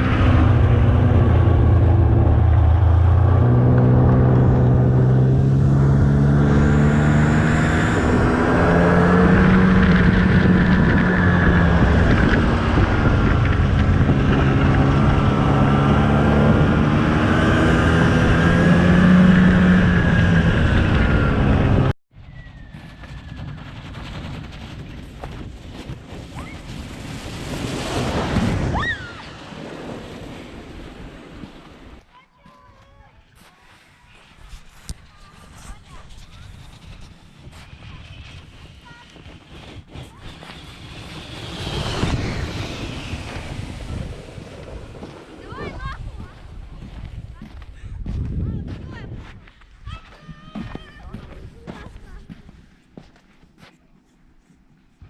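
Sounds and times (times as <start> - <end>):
snowmobile engine revving: 0.0 - 22.0, 35.4 - 47.6
wind noise on microphone: 0.0 - 32.0, 34.2 - 52.7.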